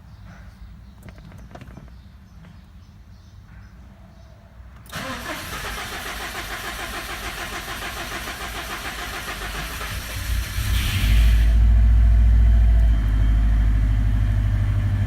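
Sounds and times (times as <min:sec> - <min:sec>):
starter cranking car engine: 0:04.9 - 0:11.6.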